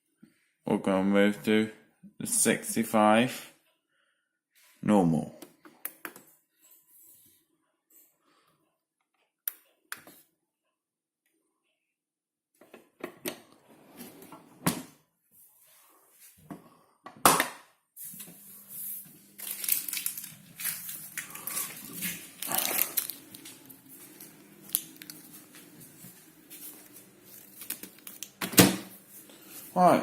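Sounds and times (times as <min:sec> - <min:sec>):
crackling rustling noise: 0:18.0 - 0:30.0.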